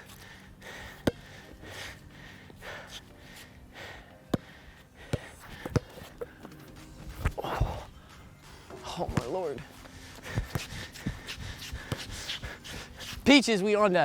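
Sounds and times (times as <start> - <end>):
person breathing heavily: 0.0 - 6.6, 7.3 - 8.8, 9.7 - 13.2
basketball bouncing on court: 5.1 - 5.9, 9.1 - 9.4, 10.4 - 11.2.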